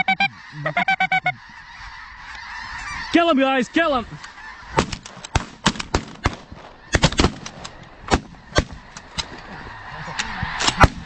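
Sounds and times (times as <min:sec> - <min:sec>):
shotguns firing: 0:04.7 - 0:09.4, 0:10.6 - 0:11.0.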